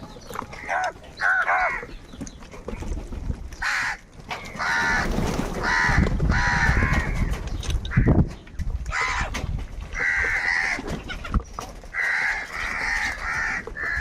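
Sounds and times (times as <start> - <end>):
crows cawing: 0.5 - 1.9, 3.6 - 8.3, 8.9 - 11.1, 11.9 - 14.0.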